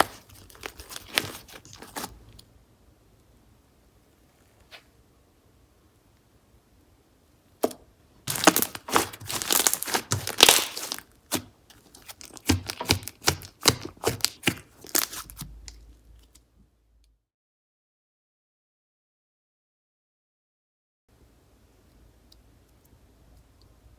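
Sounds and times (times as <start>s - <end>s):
slime squishing and crackling: 0.0s - 2.2s, 8.3s - 15.8s.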